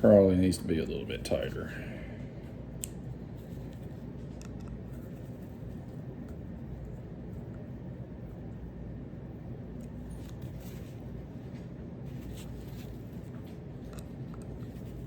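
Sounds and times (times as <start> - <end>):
low room hum: 0.0 - 15.0
small clicks and taps of tools: 3.7 - 4.8.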